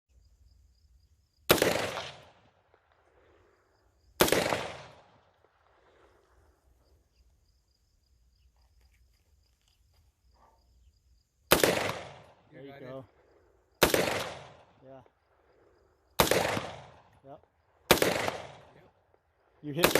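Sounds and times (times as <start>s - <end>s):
high insect trill: 0.1s - 1.5s, 5.8s - 11.6s
gunshots: 1.5s - 3.1s, 4.2s - 6.2s, 11.5s - 12.5s, 13.8s - 14.9s, 16.2s - 19.0s, 19.6s - 19.9s
gunshot echo: 1.5s - 3.2s, 4.2s - 6.2s, 11.5s - 12.5s, 13.8s - 14.8s, 16.2s - 17.2s, 17.9s - 18.9s.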